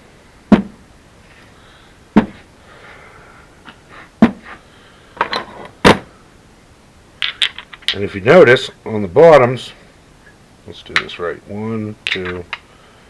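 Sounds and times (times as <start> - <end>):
light metal clinks: 7.2 - 8.1, 12.0 - 12.6.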